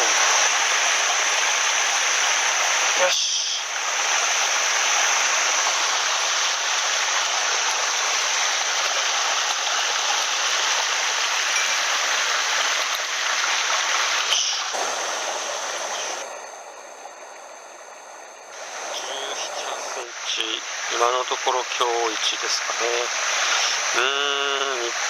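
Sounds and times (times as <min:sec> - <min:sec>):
stream rushing over rocks: 0:00.0 - 0:25.0.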